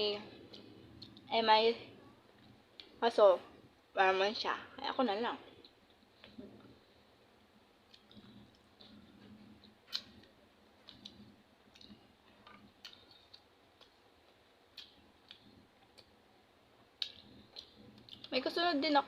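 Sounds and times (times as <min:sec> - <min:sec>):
chewing: 0:07.8 - 0:16.2, 0:16.8 - 0:18.4.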